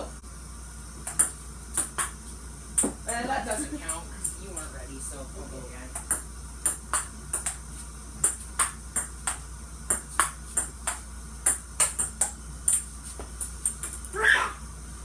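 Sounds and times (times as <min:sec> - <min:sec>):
ping pong ball clicking: 0:01.0 - 0:02.2, 0:06.0 - 0:07.6, 0:08.2 - 0:12.9.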